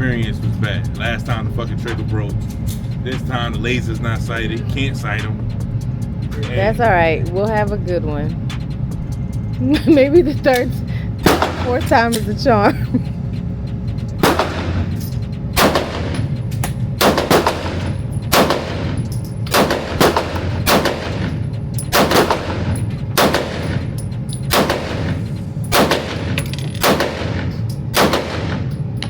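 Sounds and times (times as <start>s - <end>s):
handgun shots: 11.2s - 11.7s, 14.2s - 14.8s, 15.6s - 16.2s, 17.0s - 21.3s, 21.9s - 23.8s, 24.5s - 25.1s, 25.7s - 28.7s.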